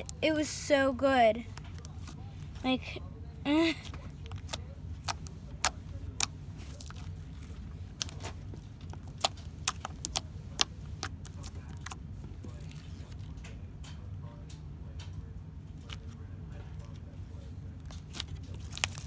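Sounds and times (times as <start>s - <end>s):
steady low hum: 0.0s - 19.0s
slime clicking and popping: 9.0s - 12.0s.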